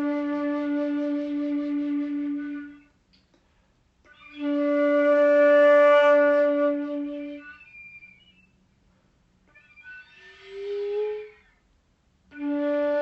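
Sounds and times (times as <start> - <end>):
wind instrument holding notes: 0.0 - 2.9, 4.1 - 8.5, 9.5 - 11.6, 12.3 - 13.0.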